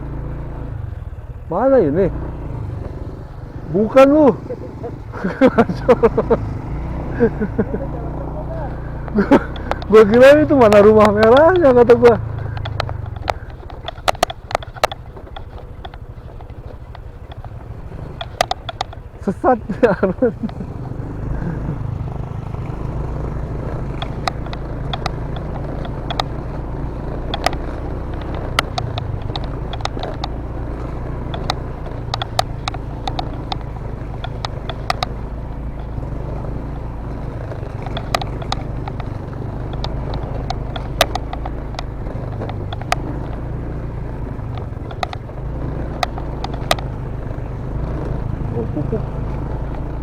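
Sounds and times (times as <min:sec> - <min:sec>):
motorcycle engine running: 0:00.0 - 0:50.0
sharp knocks and clatters: 0:09.0 - 0:19.3, 0:23.0 - 0:48.5.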